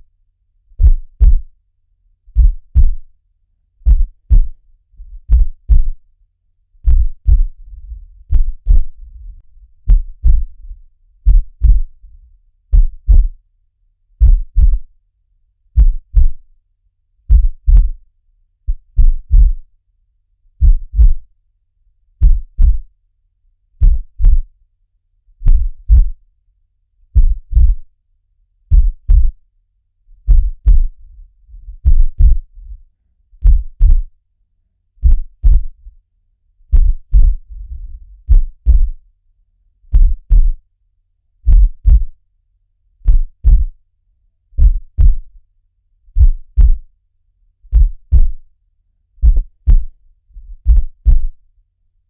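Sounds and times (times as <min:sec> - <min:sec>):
heartbeat double thump: 0:00.8 - 0:01.5, 0:02.4 - 0:03.0, 0:03.9 - 0:06.0, 0:06.8 - 0:07.6, 0:08.2 - 0:12.0, 0:12.7 - 0:13.4, 0:14.2 - 0:14.9, 0:15.8 - 0:16.4, 0:17.3 - 0:18.0, 0:18.7 - 0:19.6, 0:20.6 - 0:21.2, 0:22.2 - 0:22.9, 0:23.8 - 0:24.4, 0:25.4 - 0:26.2, 0:27.2 - 0:27.8, 0:28.7 - 0:29.4, 0:30.3 - 0:31.0, 0:31.7 - 0:32.7, 0:33.4 - 0:34.1, 0:35.0 - 0:35.8, 0:36.7 - 0:37.5, 0:38.2 - 0:39.0, 0:39.9 - 0:40.6, 0:41.5 - 0:42.2, 0:43.0 - 0:43.8, 0:44.6 - 0:45.3, 0:46.2 - 0:46.8, 0:47.7 - 0:48.4, 0:49.2 - 0:49.9, 0:50.5 - 0:51.4.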